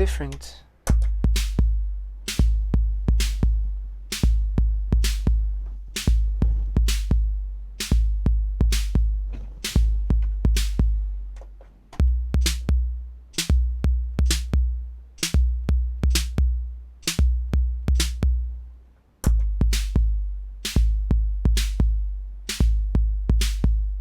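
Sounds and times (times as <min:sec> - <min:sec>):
drum machine kick booms: 0:00.9 - 0:11.1, 0:12.0 - 0:18.4, 0:19.2 - 0:24.0
snare hits: 0:20.7 - 0:20.9, 0:22.5 - 0:22.8.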